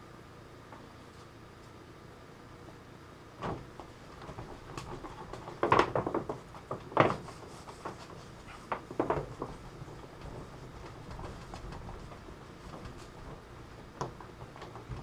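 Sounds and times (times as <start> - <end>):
objects knocking and being set down: 3.4 - 7.3, 8.7 - 12.1.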